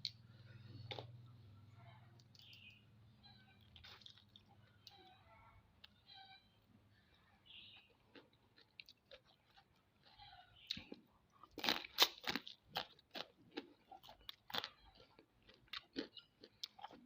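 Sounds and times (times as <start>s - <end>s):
chewing: 0.0s - 2.7s, 3.5s - 6.1s, 7.7s - 17.0s
crab shell cracking and crunching: 10.7s - 17.0s.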